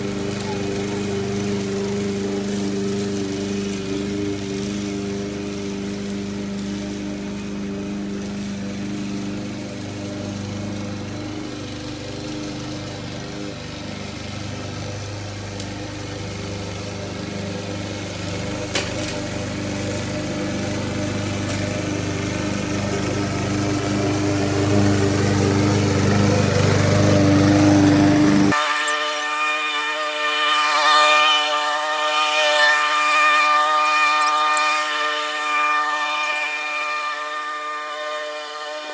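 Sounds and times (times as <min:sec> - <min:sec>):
lawn mower engine running: 0:00.0 - 0:30.8, 0:31.5 - 0:37.2.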